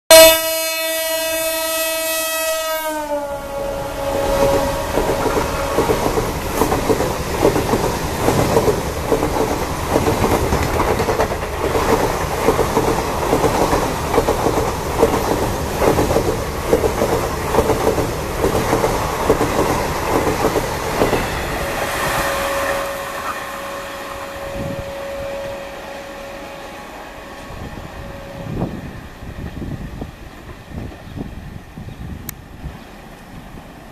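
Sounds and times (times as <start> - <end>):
locomotive horn blaring: 0.1 - 6.6, 20.8 - 29.3
train wheels clattering on rail joints: 4.1 - 21.8.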